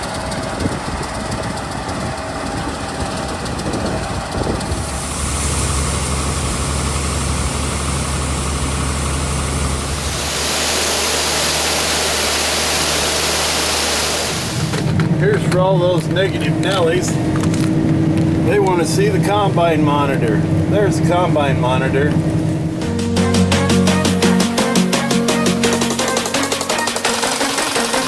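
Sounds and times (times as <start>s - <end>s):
farm machinery engine running: 0.0s - 28.0s
strong hiss: 4.7s - 8.2s, 9.6s - 14.9s.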